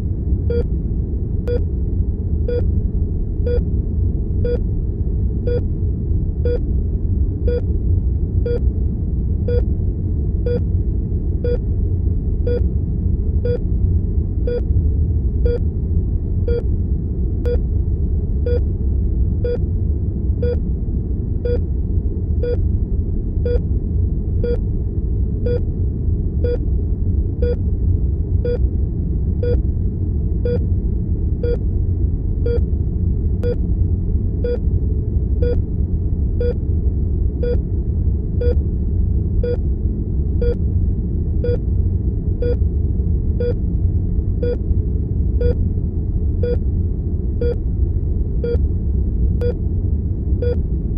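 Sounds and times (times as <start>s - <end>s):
low rumble of room tone: 0.0s - 50.9s
heart monitor beeping: 2.5s - 2.7s, 6.4s - 6.6s, 7.5s - 7.7s, 15.4s - 15.6s, 21.4s - 21.6s, 23.4s - 23.6s, 30.4s - 30.6s, 34.4s - 34.6s, 38.4s - 38.6s, 43.4s - 43.6s, 45.4s - 45.6s, 47.4s - 47.6s, 48.4s - 48.6s.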